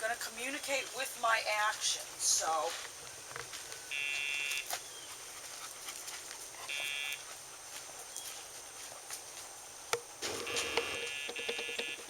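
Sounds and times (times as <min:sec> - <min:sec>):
collar pager buzzing: 0:06.8 - 0:07.2, 0:10.2 - 0:12.0.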